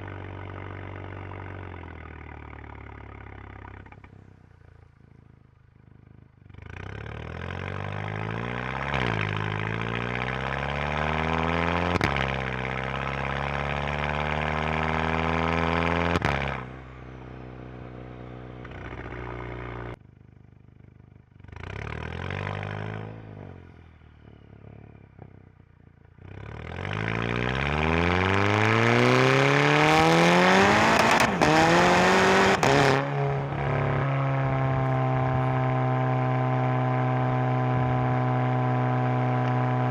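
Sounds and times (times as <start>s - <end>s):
car exhaust revving: 6.6s - 20.0s, 26.2s - 39.9s.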